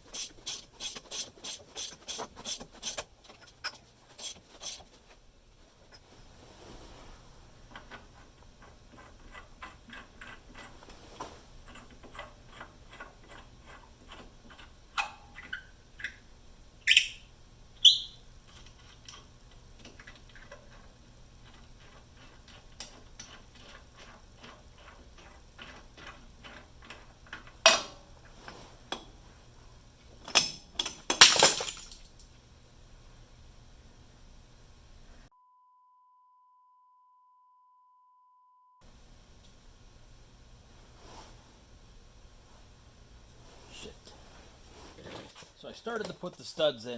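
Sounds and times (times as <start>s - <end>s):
metal clanks and scrapes: 0.0s - 6.4s
hand tools clicking on metal: 0.1s - 4.9s, 7.7s - 11.0s, 11.6s - 16.2s, 18.5s - 28.0s.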